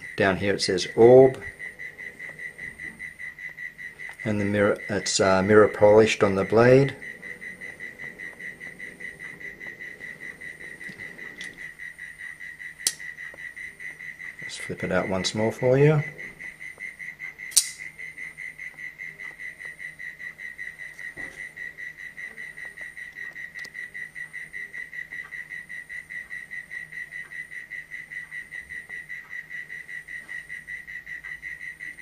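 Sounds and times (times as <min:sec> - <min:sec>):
folding knife snapping open: 0:17.5 - 0:17.8.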